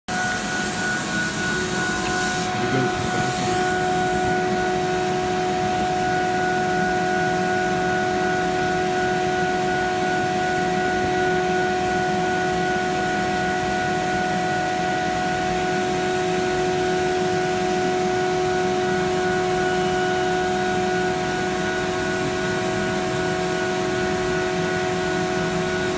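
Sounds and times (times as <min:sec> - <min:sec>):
cnc router spindle whining: 0:00.1 - 0:06.1
high hiss: 0:00.2 - 0:04.4.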